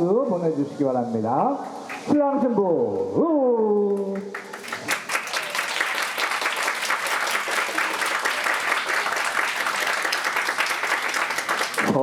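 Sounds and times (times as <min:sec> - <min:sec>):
crowd applauding: 0:04.0 - 0:12.0.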